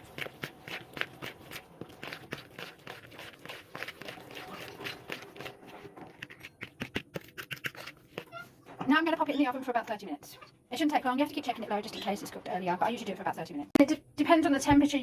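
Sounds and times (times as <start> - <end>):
spoon stirring batter in a bowl: 0.0 - 8.6.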